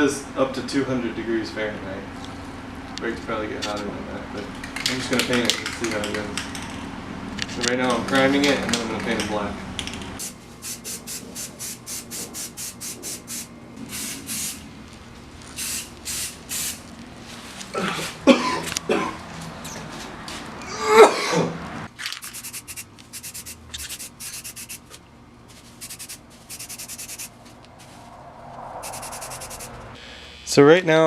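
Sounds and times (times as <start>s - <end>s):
aerosol spray can hissing: 10.2s - 14.6s, 15.5s - 16.8s, 22.2s - 24.9s, 25.7s - 27.4s
loud sharp sounds: 22.2s - 24.9s, 25.7s - 30.5s.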